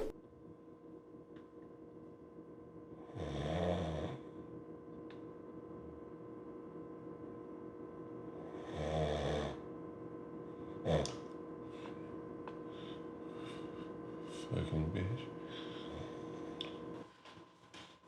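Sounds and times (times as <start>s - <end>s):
steady electrical hum: 0.0s - 17.7s
snort: 3.0s - 4.3s, 8.4s - 9.6s, 10.8s - 11.2s
person snoring: 8.4s - 9.6s.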